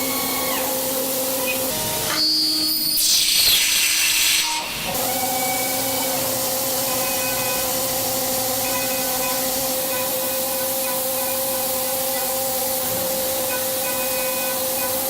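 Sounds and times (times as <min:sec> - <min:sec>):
machine hiss: 0:00.0 - 0:15.0
machine whine: 0:00.0 - 0:15.0.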